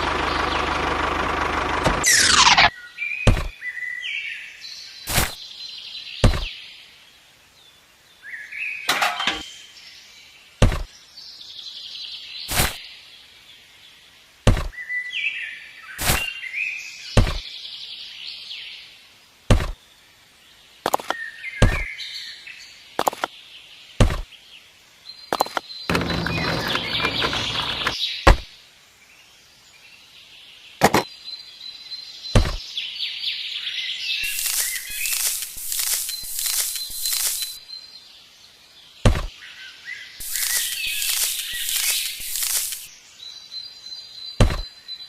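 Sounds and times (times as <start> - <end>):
sharp knocks: 3.3 - 3.5, 6.2 - 6.5, 10.6 - 10.9, 14.5 - 14.7, 25.4 - 28.5, 32.4 - 32.6, 39.0 - 39.3, 44.4 - 44.7
high chirping: 34.2 - 37.6, 40.2 - 42.9.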